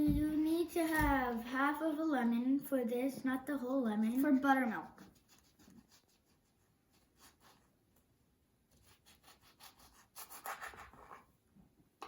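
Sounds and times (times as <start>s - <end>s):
faint rubbing and scratching: 4.3s - 7.8s, 8.7s - 11.4s.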